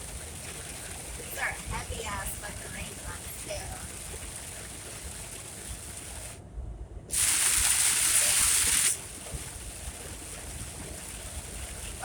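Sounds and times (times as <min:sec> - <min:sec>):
heavy rain on vehicle: 0:00.0 - 0:06.4, 0:07.1 - 0:12.0
hiss of water spray: 0:07.1 - 0:12.0.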